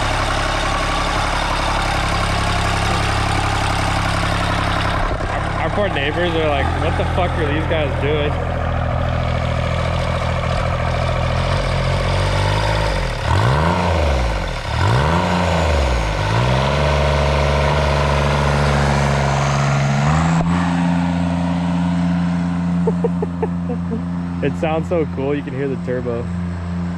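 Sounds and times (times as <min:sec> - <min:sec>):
diesel lawn mower engine running: 0:00.0 - 0:26.9.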